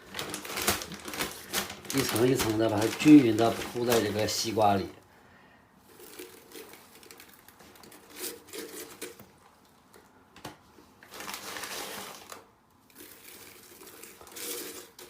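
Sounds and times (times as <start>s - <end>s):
crystals crunching and rustling: 5.9s - 9.2s, 13.0s - 15.0s.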